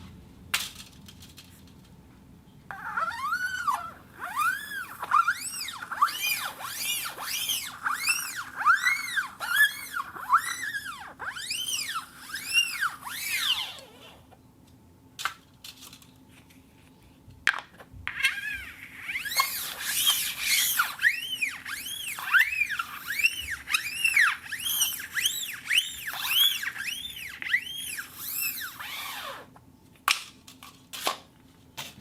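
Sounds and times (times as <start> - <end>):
plastic cup squeaking on turntable: 2.7 - 14.4, 18.1 - 29.6.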